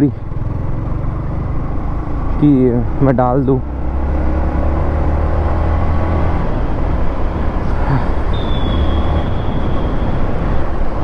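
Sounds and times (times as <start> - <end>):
motorcycle engine running: 0.0 - 5.5
wind and road noise: 0.0 - 11.0
thin high whistle: 8.3 - 10.3.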